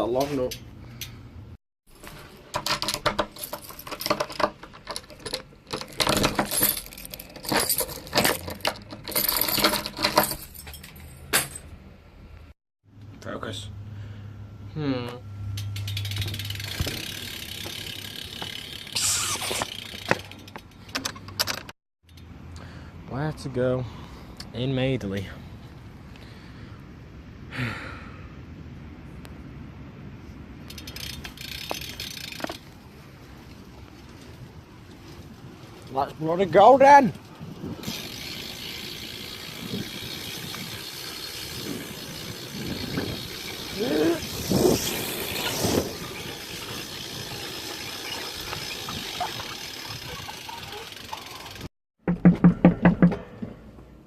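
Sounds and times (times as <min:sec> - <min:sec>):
bike hub ratcheting clicks: 0:15.5 - 0:21.5, 0:30.7 - 0:32.7, 0:37.8 - 0:51.7.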